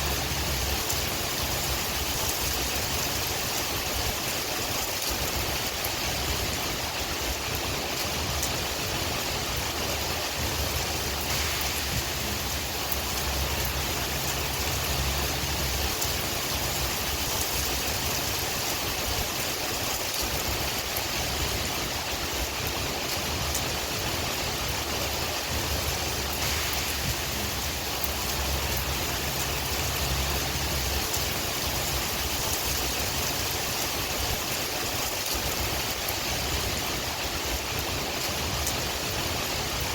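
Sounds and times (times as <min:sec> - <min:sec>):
low wind rumble: 0:00.0 - 0:39.9
rain hiss: 0:00.0 - 0:39.9
rain drop ticks: 0:11.1 - 0:18.8, 0:25.9 - 0:36.7.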